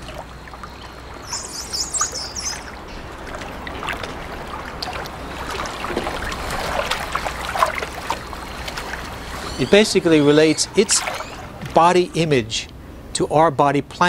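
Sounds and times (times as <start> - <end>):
water splashing and sloshing: 0.0 - 13.2
dolphin whistles: 1.2 - 2.7, 8.4 - 12.3.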